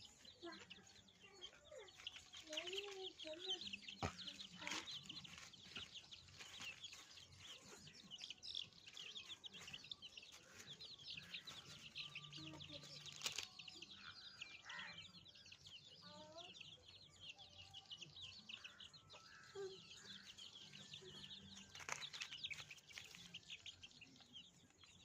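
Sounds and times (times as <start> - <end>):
chickens clucking: 0.0 - 14.2, 17.2 - 25.0.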